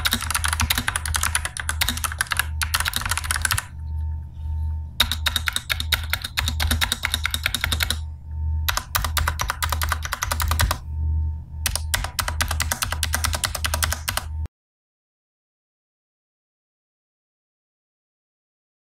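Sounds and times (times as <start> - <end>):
mechanical keyboard typing: 0.0 - 3.7, 5.0 - 8.0, 8.7 - 10.8, 11.6 - 14.3
low pulsing hum: 0.0 - 14.5.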